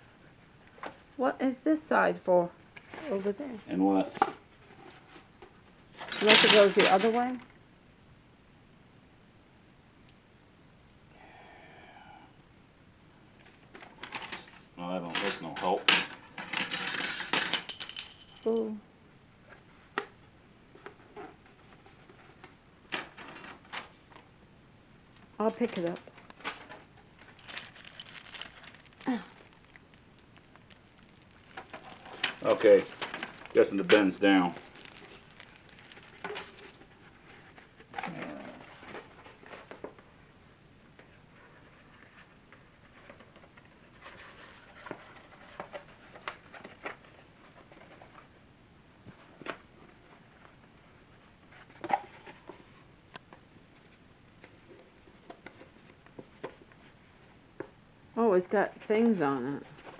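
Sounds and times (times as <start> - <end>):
rustling of handled parts: 6.0 - 7.4, 13.7 - 18.6, 26.0 - 39.7.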